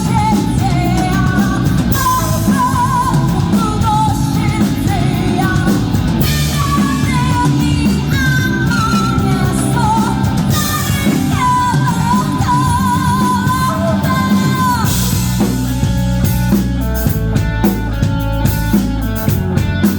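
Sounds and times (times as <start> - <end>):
person singing: 0.0 - 15.6
rock band playing: 0.0 - 19.9.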